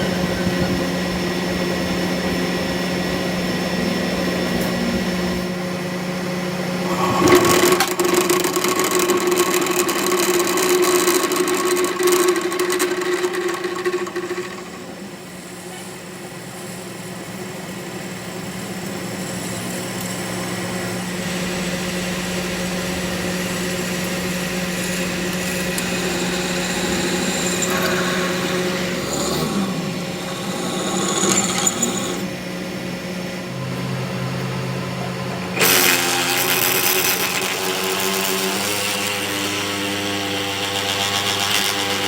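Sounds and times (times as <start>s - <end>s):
workshop machinery humming: 0.0s - 42.0s
power tool harsh sound: 6.7s - 32.6s, 35.6s - 42.0s.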